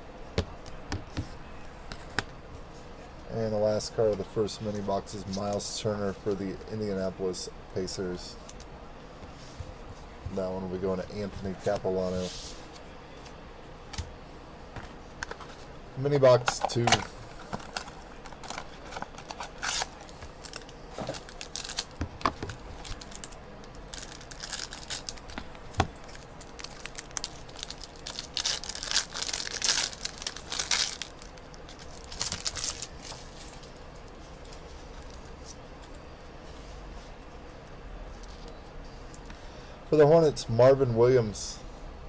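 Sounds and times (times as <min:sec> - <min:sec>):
packaging crinkling: 0:16.5 - 0:33.8.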